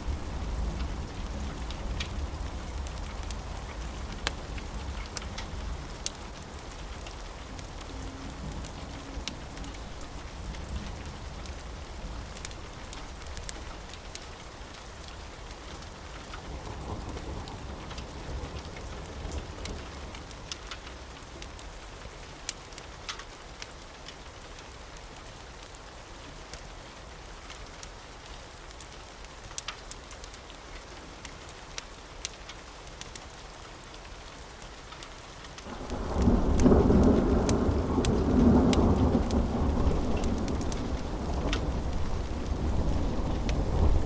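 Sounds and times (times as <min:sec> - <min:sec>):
low rumble of thunder: 0:00.0 - 0:15.2, 0:15.8 - 0:20.6, 0:35.7 - 0:44.0
sharp crackles and pops: 0:00.0 - 0:25.8, 0:26.4 - 0:44.0
steady rain falling: 0:00.0 - 0:44.0.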